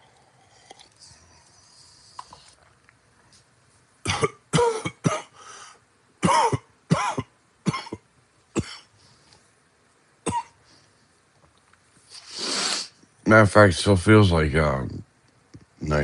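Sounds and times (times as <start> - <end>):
man coughing: 4.1 - 5.4, 6.2 - 8.0, 10.3 - 10.6.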